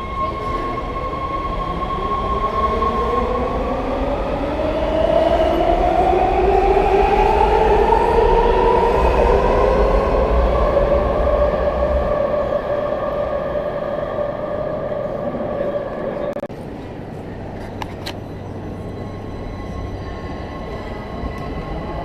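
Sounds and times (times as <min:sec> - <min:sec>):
train low rumble: 0:00.0 - 0:22.0.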